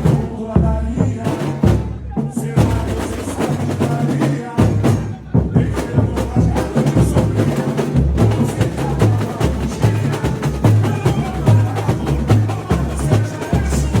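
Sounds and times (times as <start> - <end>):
fast sharp percussion strikes: 0.0 - 14.0
deep bass drums beating: 4.6 - 14.0.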